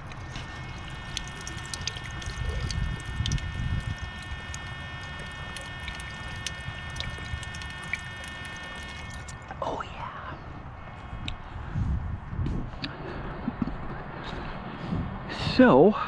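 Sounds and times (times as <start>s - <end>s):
water running from a fountain: 0.0s - 9.4s
faint high whine: 0.0s - 9.6s.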